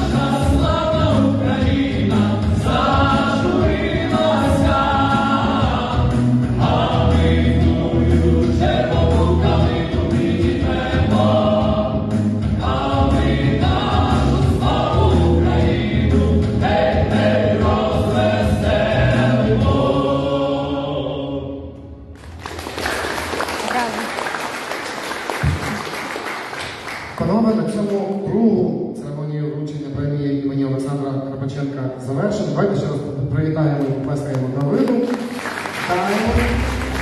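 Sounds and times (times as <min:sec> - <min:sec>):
heavy bass line: 0:00.0 - 0:20.1
choir singing with instruments: 0:00.0 - 0:22.1.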